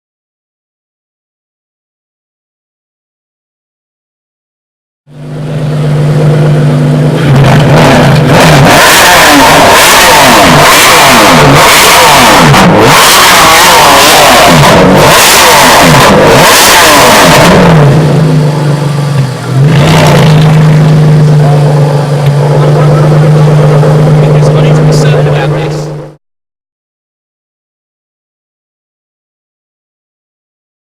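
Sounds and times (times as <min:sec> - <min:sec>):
car engine revving: 0:05.1 - 0:26.2.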